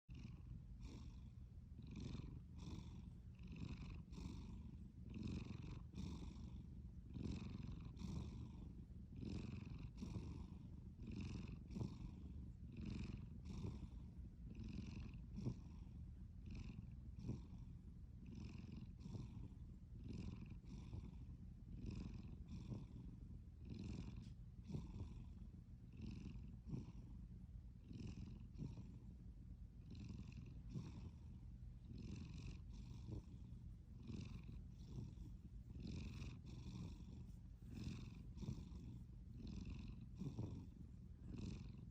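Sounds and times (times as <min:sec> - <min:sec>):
cat snoring: 0:00.1 - 0:41.9.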